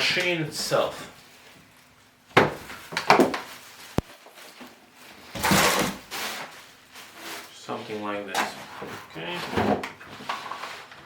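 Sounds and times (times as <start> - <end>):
cardboard packaging rustling: 2.6 - 7.9.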